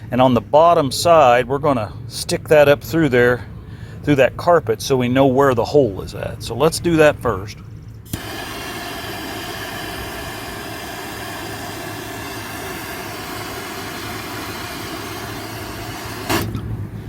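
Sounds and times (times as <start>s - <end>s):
gas torch hissing: 8.1s - 17.0s.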